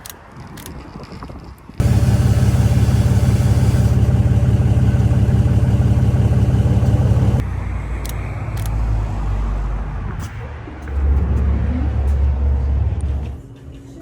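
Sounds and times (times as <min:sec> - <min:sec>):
vehicle engine droning: 0:01.8 - 0:08.7.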